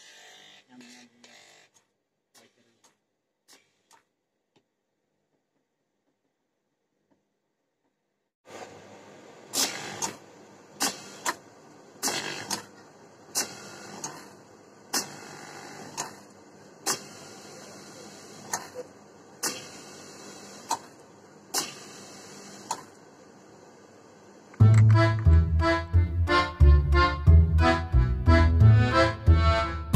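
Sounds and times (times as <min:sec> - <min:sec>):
sewing machine motor whirring: 0:00.0 - 0:02.8, 0:12.0 - 0:18.8, 0:19.4 - 0:21.0.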